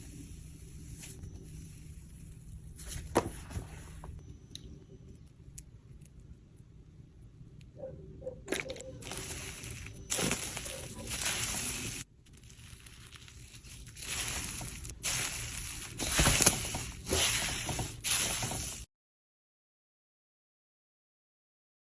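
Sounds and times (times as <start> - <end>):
wet slime squishing: 8.3 - 18.8.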